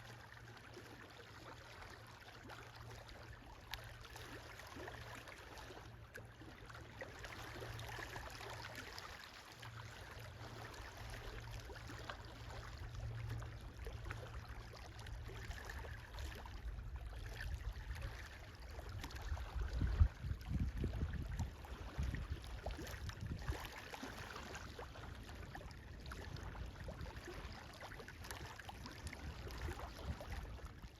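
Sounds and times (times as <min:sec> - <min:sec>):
wind rumbling on microphone: 0:16.4 - 0:30.9.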